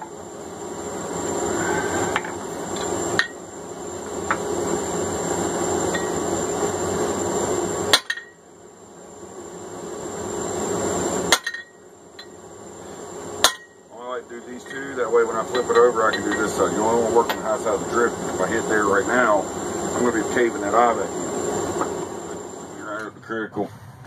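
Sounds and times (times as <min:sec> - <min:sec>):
hammer ringing on hot steel: 0:03.2 - 0:03.4, 0:05.9 - 0:06.2, 0:07.9 - 0:08.4, 0:11.3 - 0:12.4, 0:13.4 - 0:13.9, 0:14.5 - 0:17.9
steady rushing noise: 0:12.2 - 0:24.0.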